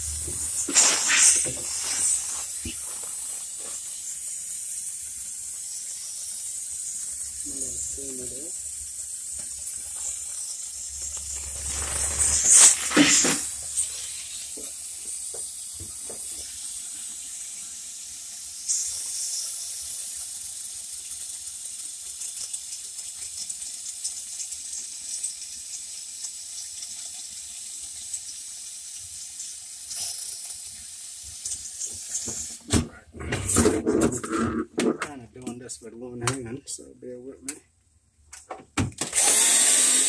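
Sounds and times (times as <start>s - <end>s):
high-pitched hiss: 0.0s - 21.1s, 29.0s - 34.6s.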